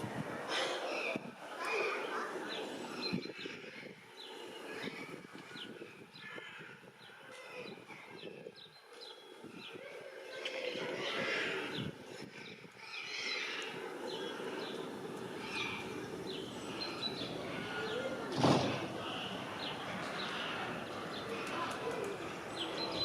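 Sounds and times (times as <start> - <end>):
small birds chirping: 0.0 - 23.0.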